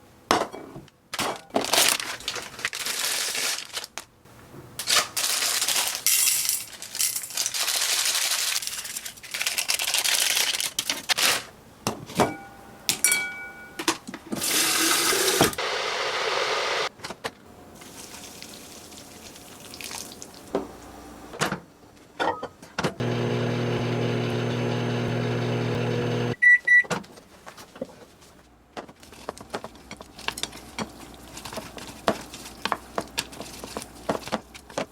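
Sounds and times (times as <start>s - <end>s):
rustling and handling noises: 1.1s - 11.5s, 26.9s - 34.9s
microwave oven humming: 23.0s - 26.4s
microwave high beeps: 23.0s - 26.9s.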